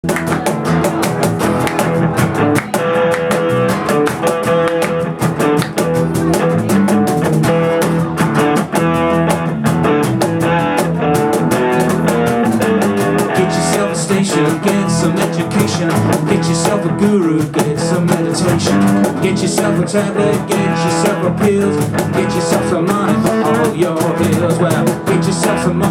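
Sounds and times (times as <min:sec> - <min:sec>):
drum kit fast beat: 0:00.0 - 0:25.9
strummed guitar: 0:00.0 - 0:25.9.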